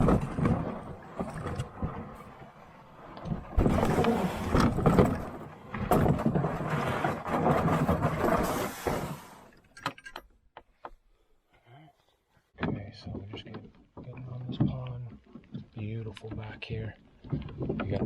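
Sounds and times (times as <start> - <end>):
canoe hull scraping over ground: 0.0 - 9.6.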